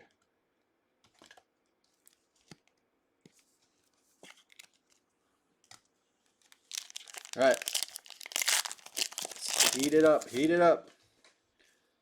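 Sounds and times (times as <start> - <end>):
trading cards and wrappers rustling: 6.4 - 10.6.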